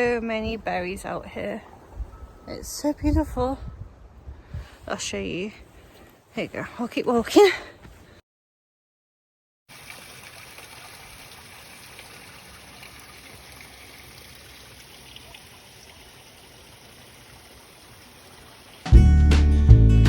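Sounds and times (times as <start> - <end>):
running water rushing: 9.7 - 19.0.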